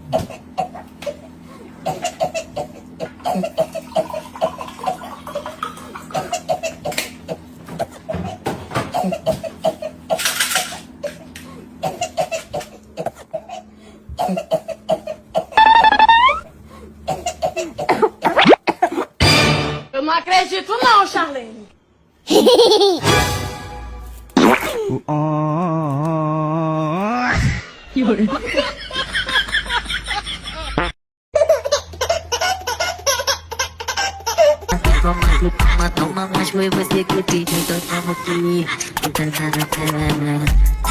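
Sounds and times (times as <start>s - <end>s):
person coughing: 6.2s - 10.0s, 11.8s - 15.6s, 17.1s - 19.0s
rising whistle-like tone: 15.6s - 16.5s
laughter: 22.3s - 23.0s, 28.0s - 30.9s.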